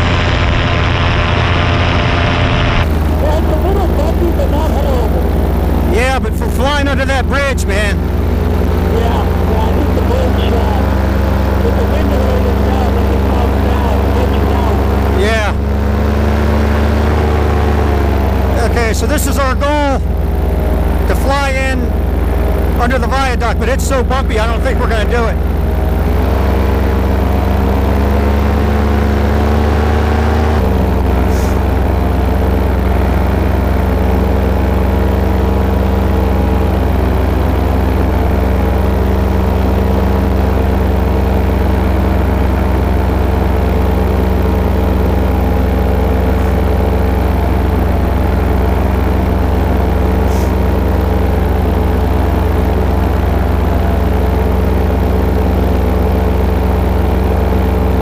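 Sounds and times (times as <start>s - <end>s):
paramotor engine and propeller: 0.0s - 58.0s.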